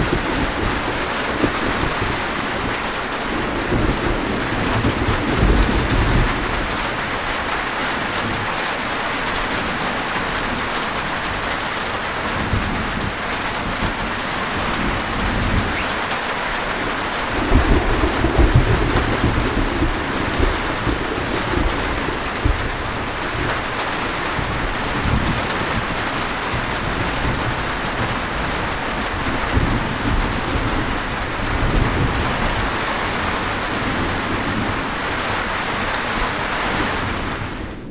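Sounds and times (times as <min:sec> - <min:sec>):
heavy rain falling: 0:00.0 - 0:37.9
thunder rumbling: 0:00.0 - 0:37.9.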